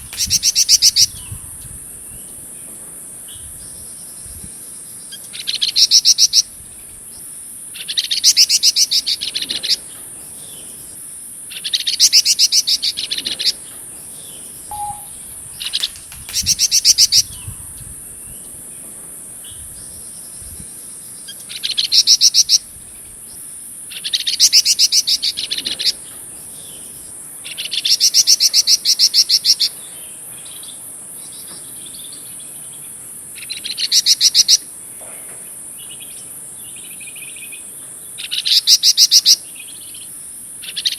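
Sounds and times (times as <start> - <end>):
songbird trilling: 0.0 - 1.4, 14.7 - 17.6.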